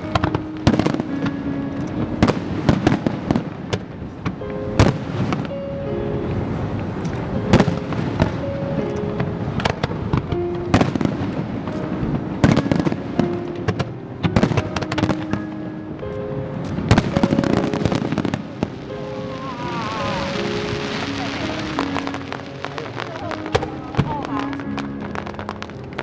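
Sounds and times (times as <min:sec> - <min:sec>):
fireworks bangs and crackles: 0:00.0 - 0:05.6, 0:06.3 - 0:26.0
music playing: 0:00.0 - 0:26.0.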